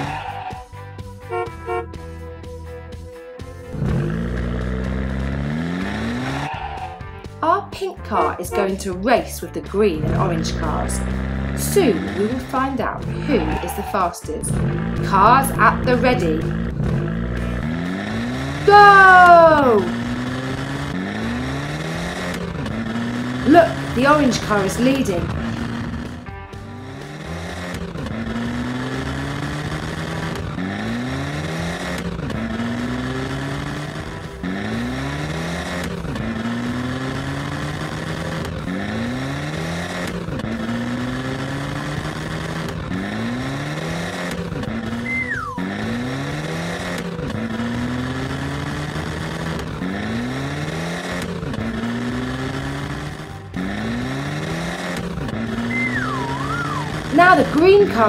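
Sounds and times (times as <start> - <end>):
race car engine revving: 0.0 - 58.0
short high falling squeal: 55.7 - 56.9.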